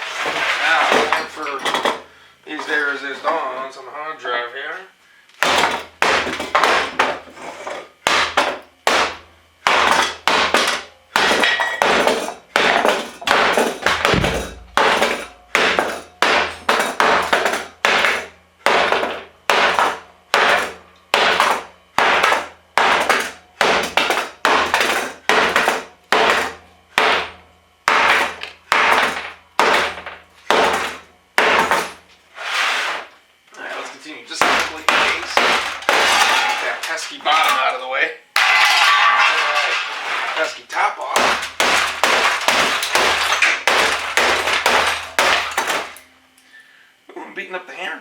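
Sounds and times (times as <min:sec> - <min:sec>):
hammer blows on a computer: 0:12.6 - 0:18.9.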